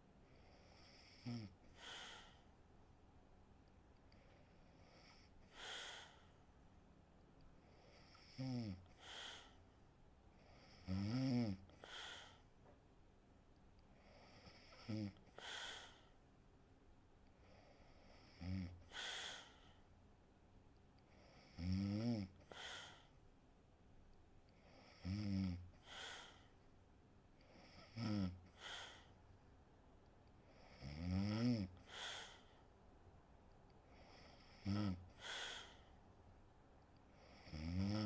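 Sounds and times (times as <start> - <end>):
woman snoring: 0.6 - 2.3, 7.9 - 9.6, 10.6 - 12.4, 21.3 - 23.0, 27.6 - 29.1, 30.6 - 32.5, 34.0 - 35.8, 37.2 - 38.0.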